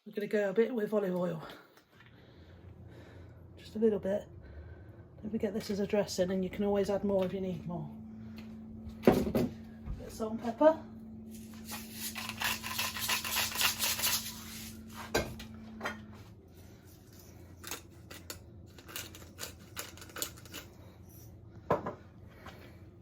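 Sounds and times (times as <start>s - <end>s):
gritty clicking of seasoning: 11.6s - 14.6s, 17.6s - 20.7s.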